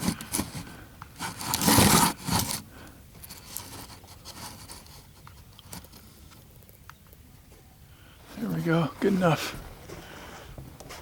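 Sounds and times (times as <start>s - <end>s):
rifle handling scraping: 0.0s - 2.6s, 3.2s - 6.1s.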